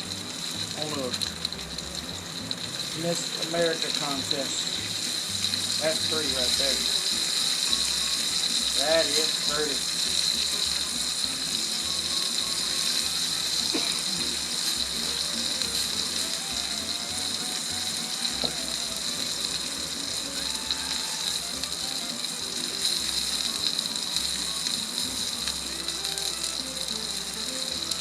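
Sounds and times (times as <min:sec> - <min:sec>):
faint music: 0:00.0 - 0:28.0
steak sizzling on griddle: 0:00.0 - 0:28.0.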